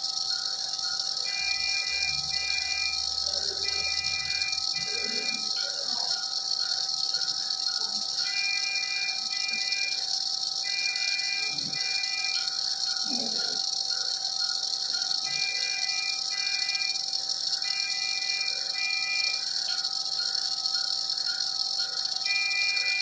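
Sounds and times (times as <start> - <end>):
short high-pitched beeps: 1.3 - 7.1, 7.7 - 13.6, 14.4 - 23.0.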